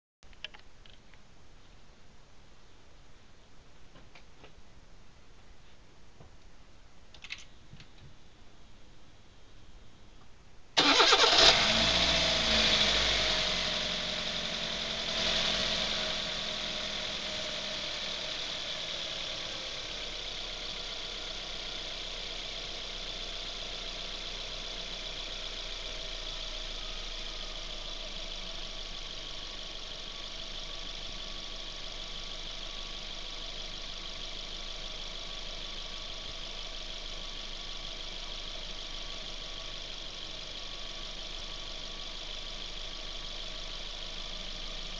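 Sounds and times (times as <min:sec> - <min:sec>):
car engine starting and idling: 0:10.8 - 0:44.9.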